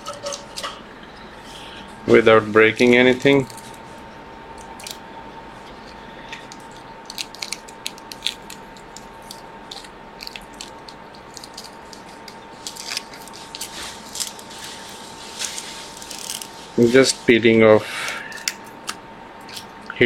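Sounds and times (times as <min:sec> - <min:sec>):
tape peeling clicks and crackles: 0:04.6 - 0:05.0, 0:05.8 - 0:16.5.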